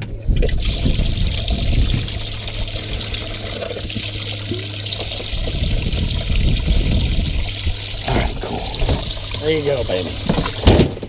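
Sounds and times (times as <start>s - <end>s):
steady low hum: 0.0s - 10.7s
water pouring and trickling: 0.4s - 11.0s.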